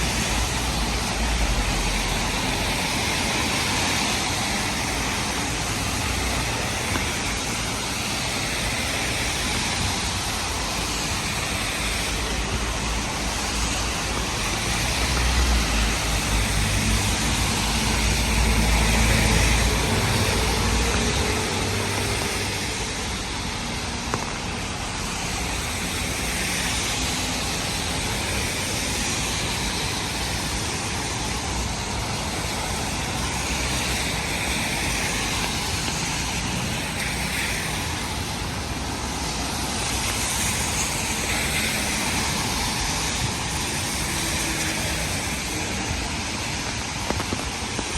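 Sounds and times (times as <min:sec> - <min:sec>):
rain hissing: 0:00.0 - 0:47.9
tyres on wet road: 0:00.0 - 0:47.9
passing vehicle rumble: 0:11.4 - 0:25.3.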